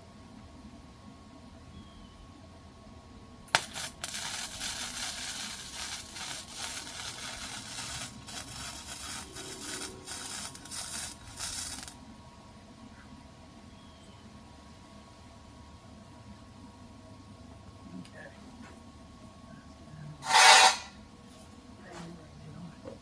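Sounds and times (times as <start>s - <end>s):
welding arc crackling: 3.5s - 12.0s.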